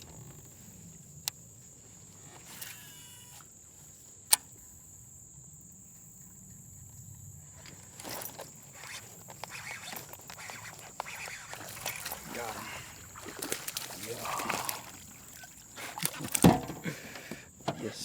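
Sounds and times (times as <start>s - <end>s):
insects droning: 0.0s - 18.0s
sharp click: 4.3s - 4.6s
rustling handling noise: 7.6s - 18.0s.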